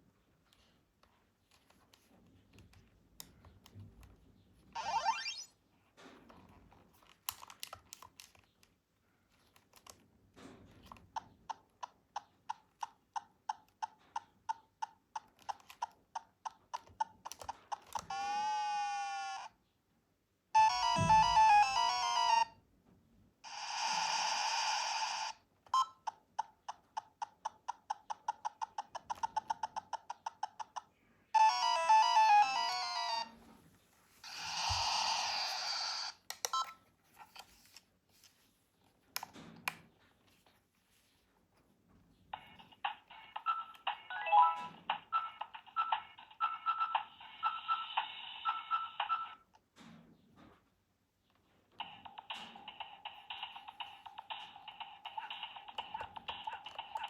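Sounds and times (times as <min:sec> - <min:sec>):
warbling electronic siren: 0:04.8 - 0:05.5
chirping electronic tune: 0:20.6 - 0:22.4.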